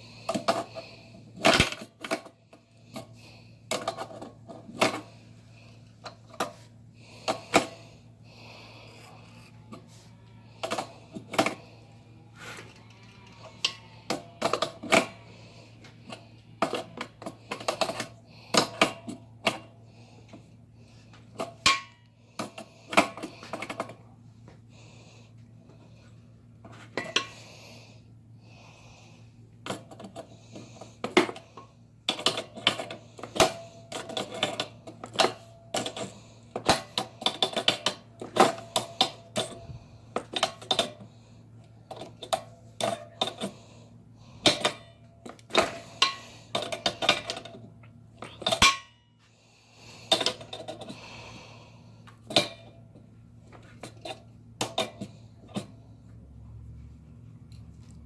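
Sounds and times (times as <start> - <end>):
steady low hum: 0.0 - 58.0
metal tools clinking: 29.7 - 41.1, 48.2 - 49.0.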